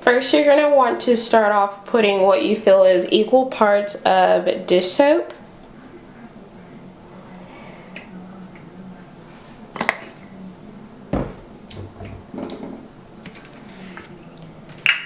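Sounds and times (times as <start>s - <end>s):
faint steady hum: 0.0s - 15.0s
low thump: 11.1s - 12.2s.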